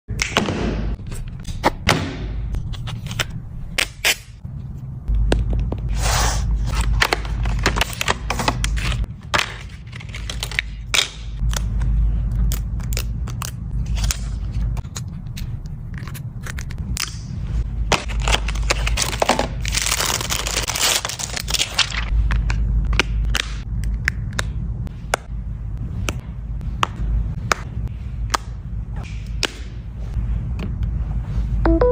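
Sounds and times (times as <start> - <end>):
steady low hum: 0.1 - 31.9
packaging rustling: 17.9 - 22.1
plastic packaging crackling: 18.0 - 22.1.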